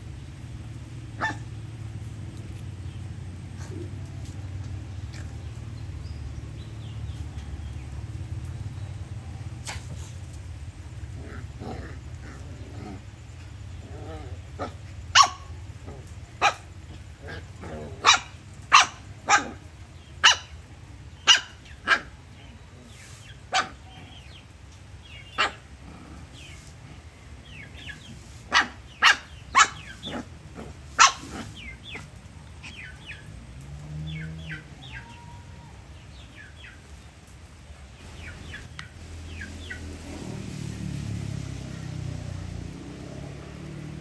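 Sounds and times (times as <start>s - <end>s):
low engine-like rumble: 0.0s - 44.0s
dog barking: 1.2s - 1.5s, 14.6s - 20.6s, 21.2s - 22.2s, 23.5s - 24.0s, 25.2s - 25.7s, 27.8s - 32.9s.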